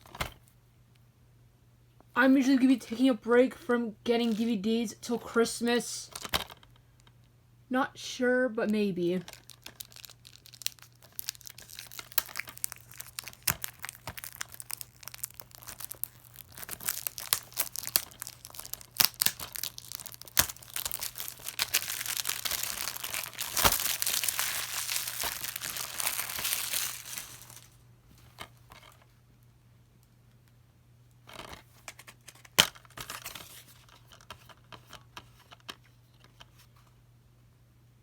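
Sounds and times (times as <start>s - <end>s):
plastic wrapping crinkling: 9.2s - 27.8s.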